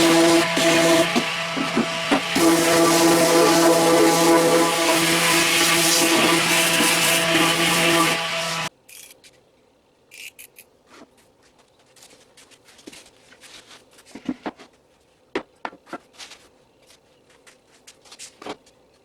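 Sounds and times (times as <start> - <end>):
motor-driven tool running: 0.0 - 8.7.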